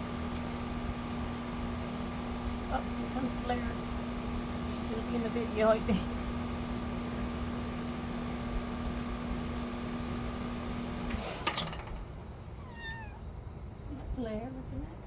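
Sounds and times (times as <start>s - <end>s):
steady hum: 0.0s - 11.2s
young cat meowing: 12.6s - 13.3s.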